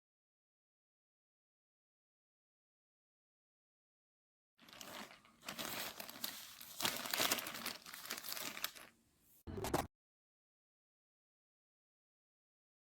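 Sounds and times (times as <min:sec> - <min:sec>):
crinkling and rustling: 0:04.6 - 0:09.0.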